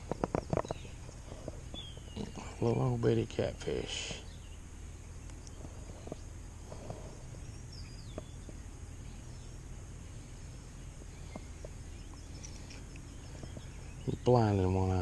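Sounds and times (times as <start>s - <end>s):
insects humming: 0.0s - 15.0s
faint clicks: 5.2s - 7.4s.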